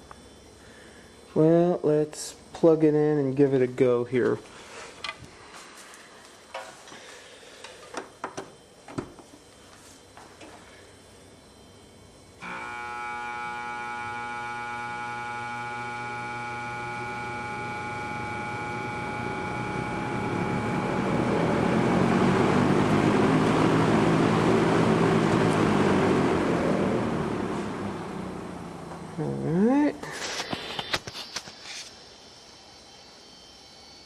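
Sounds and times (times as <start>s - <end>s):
fan motor humming: 9.7s - 31.9s.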